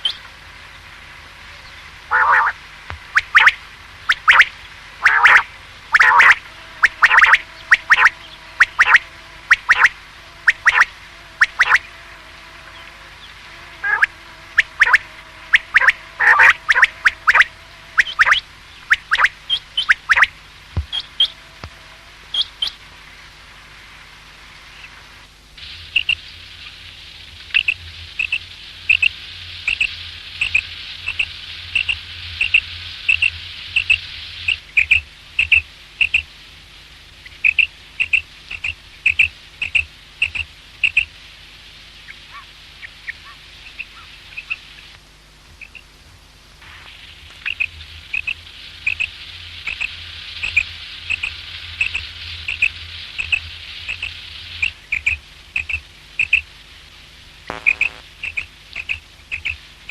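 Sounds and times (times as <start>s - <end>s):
low hum: 0.0s - 35.6s, 38.8s - 59.9s
steady hiss: 0.0s - 59.9s
quail calling: 2.1s - 11.9s, 13.8s - 21.7s, 42.1s - 44.7s, 47.4s - 49.1s.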